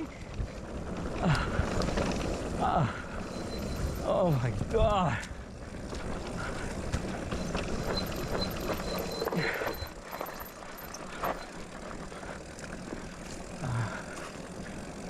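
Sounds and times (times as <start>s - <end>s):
bike clicks and rattles: 0.0s - 15.0s
tyres on dirt trail: 0.0s - 15.0s
faint high whine: 3.1s - 4.8s, 7.1s - 11.7s.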